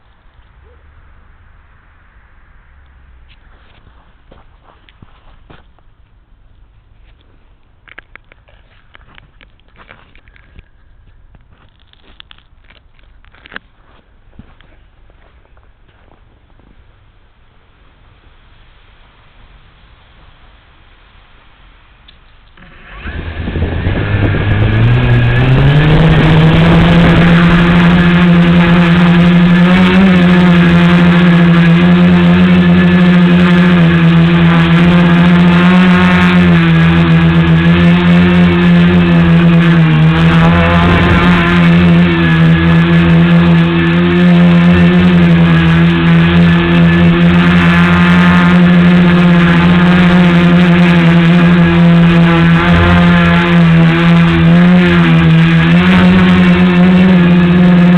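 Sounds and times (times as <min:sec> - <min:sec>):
drone motors buzzing whine: 0:22.5 - 0:57.9.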